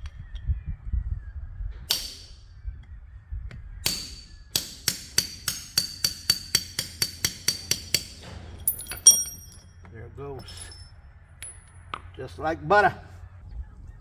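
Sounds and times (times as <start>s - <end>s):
hammer blows on steel chain: 3.9s - 9.8s.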